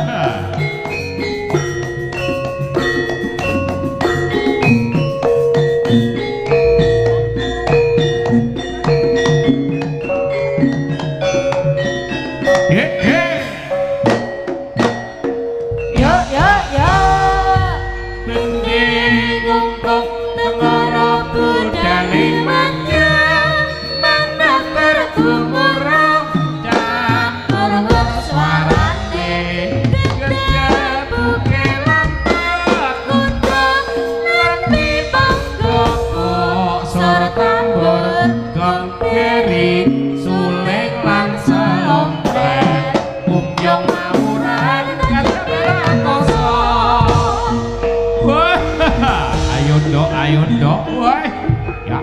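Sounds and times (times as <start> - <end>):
person singing: 0.0 - 0.9, 12.5 - 14.2, 15.9 - 52.0
gamelan ensemble with drums: 0.0 - 52.0.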